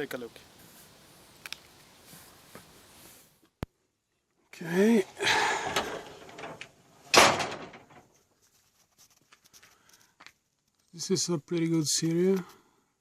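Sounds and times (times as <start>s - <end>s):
faint clicks: 1.4s - 1.7s
loud knock or slam: 7.1s - 7.9s
rustling handling noise: 7.6s - 12.7s.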